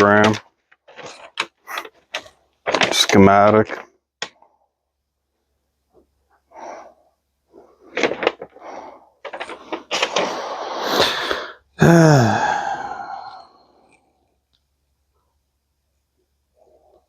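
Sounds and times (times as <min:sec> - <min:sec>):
metal parts rattling and scraping: 0:00.0 - 0:03.9, 0:07.8 - 0:10.3.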